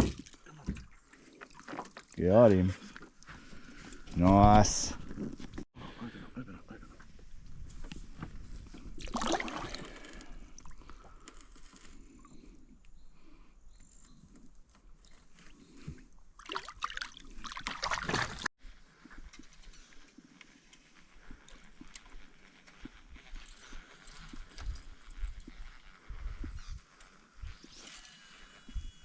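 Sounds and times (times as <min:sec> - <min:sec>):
water splashing and sloshing: 0:00.0 - 0:02.2, 0:08.3 - 0:10.9, 0:15.0 - 0:18.5.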